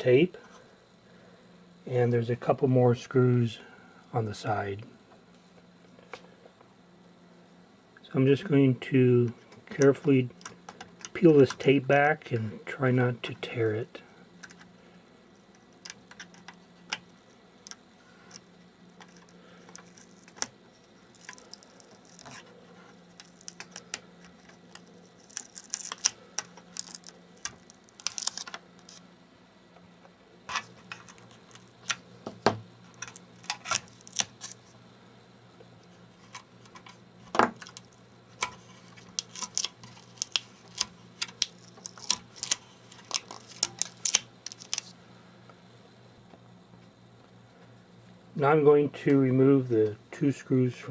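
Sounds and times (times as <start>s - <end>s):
faint steady hum: 0.0s - 50.9s
adhesive tape peeling crackles: 19.0s - 29.0s, 32.9s - 34.6s, 37.6s - 44.9s.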